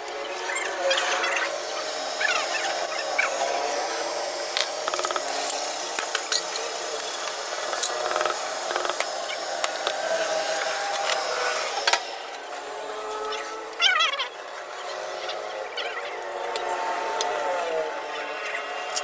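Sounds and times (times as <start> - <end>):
steady background noise: 0.0 - 19.0
hand tools clicking and knocking: 4.6 - 11.2.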